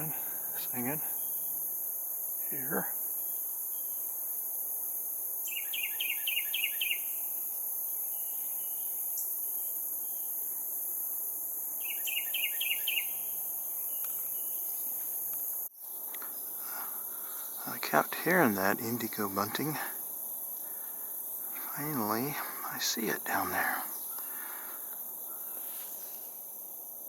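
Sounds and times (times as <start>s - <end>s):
wren singing: 0.0s - 4.4s, 5.4s - 7.4s, 11.7s - 26.1s
crickets and insects chirring: 0.0s - 27.0s.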